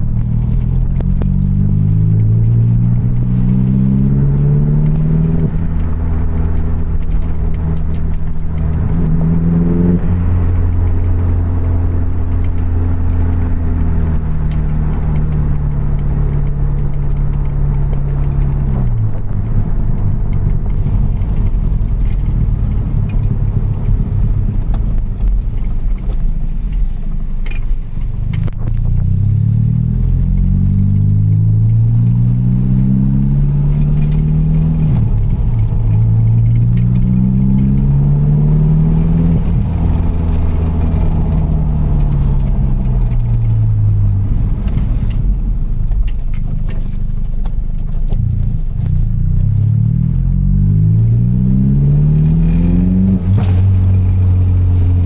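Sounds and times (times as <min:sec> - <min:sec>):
car engine revving: 0:00.0 - 0:55.0.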